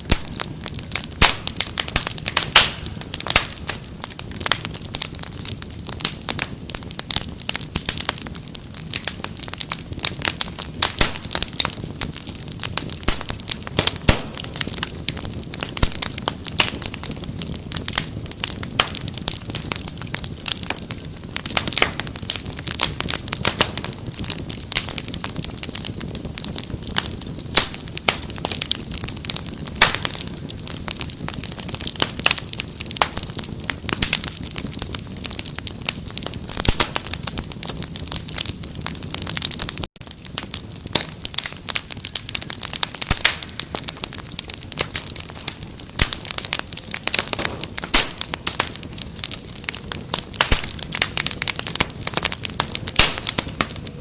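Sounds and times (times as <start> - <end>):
low rumble of flame: 0.0 - 54.0
wood fire crackling and popping: 0.0 - 54.0.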